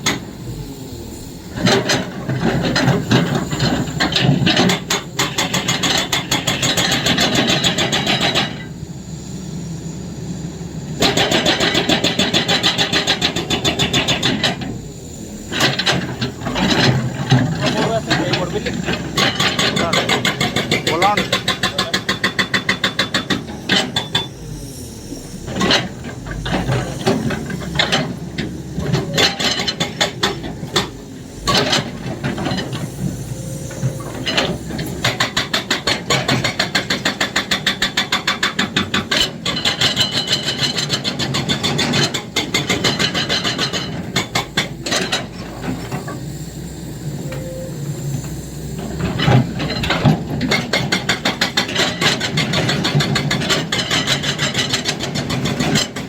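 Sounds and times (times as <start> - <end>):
excavator engine running: 0.0 - 56.0
hydraulic breaker hammering: 1.6 - 8.7, 11.0 - 14.8, 15.4 - 24.3, 25.4 - 46.1, 48.8 - 56.0.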